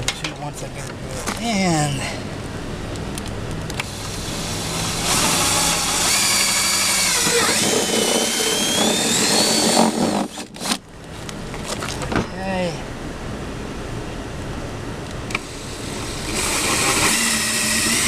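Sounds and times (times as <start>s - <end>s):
electric drill whining: 3.8s - 10.8s, 15.4s - 18.0s.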